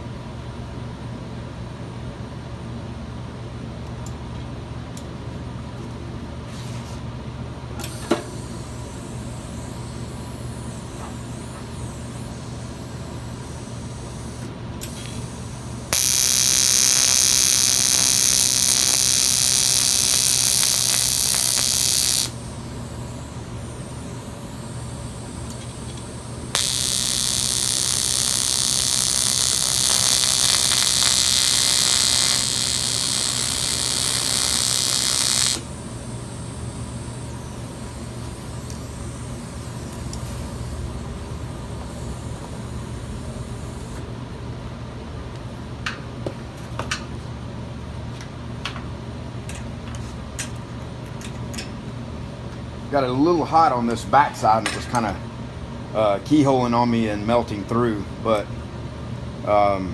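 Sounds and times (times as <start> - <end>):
steady low hum: 0.0 - 59.9
welding arc buzzing and hissing: 7.8 - 44.1.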